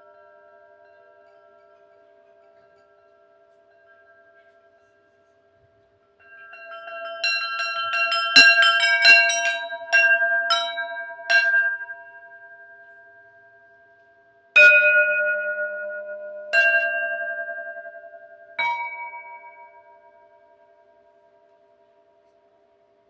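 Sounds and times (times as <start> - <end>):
metal bells ringing: 6.1 - 13.4, 14.6 - 21.7.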